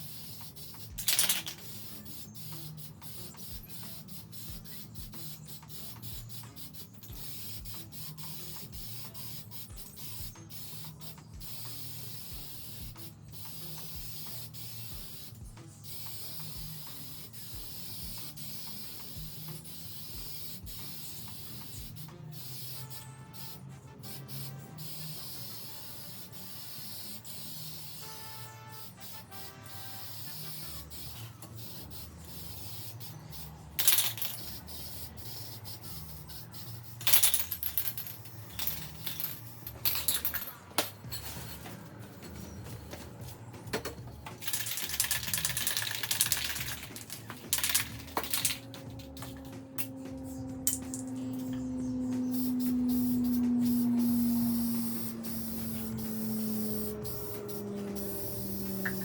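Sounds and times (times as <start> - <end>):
pressure washer spray hiss: 0.0 - 37.4, 52.2 - 59.0.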